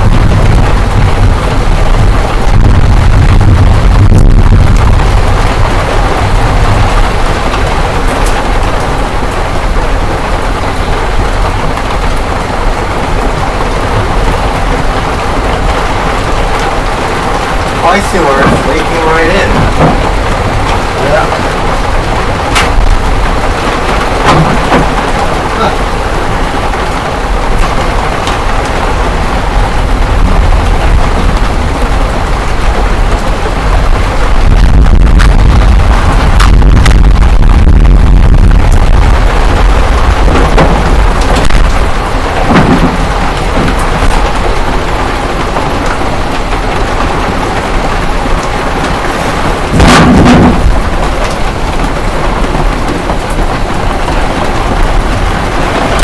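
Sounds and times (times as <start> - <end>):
deep rumble: 0.0 - 56.0
heavy rain pouring: 0.0 - 56.0.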